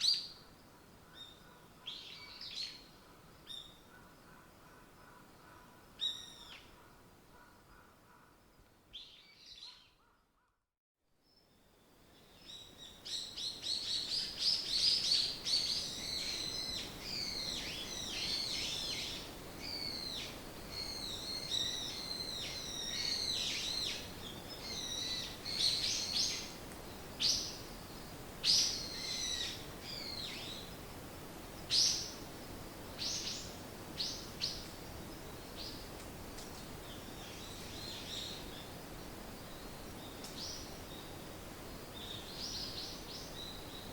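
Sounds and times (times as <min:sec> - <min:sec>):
faint steady hiss: 0:00.0 - 0:09.7, 0:11.1 - 0:43.9
songbirds singing and chirping: 0:31.6 - 0:43.9.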